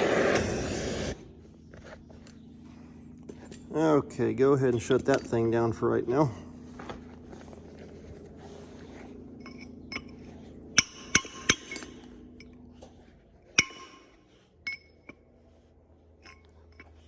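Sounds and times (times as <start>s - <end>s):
low steady hum: 0.0s - 17.0s
metallic clinks: 9.4s - 12.7s, 13.6s - 15.4s, 16.1s - 17.0s.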